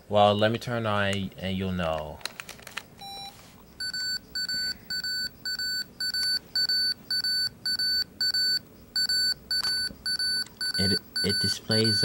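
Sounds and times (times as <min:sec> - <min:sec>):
short high warning beeps: 0:03.0 - 0:12.0.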